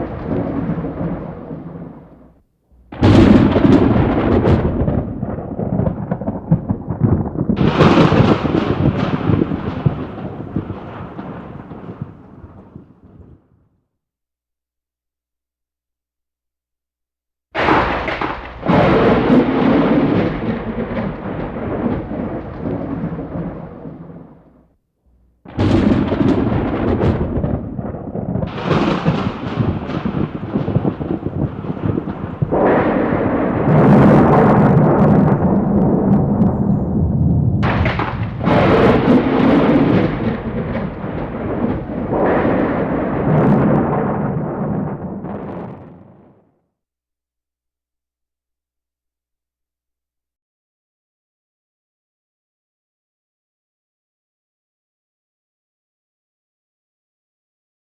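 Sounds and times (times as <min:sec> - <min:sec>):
thunder crack: 0:00.0 - 0:13.6, 0:17.6 - 0:24.5, 0:25.5 - 0:46.6
thunder rolling rumble: 0:00.0 - 0:13.6, 0:17.6 - 0:24.5, 0:25.5 - 0:46.5.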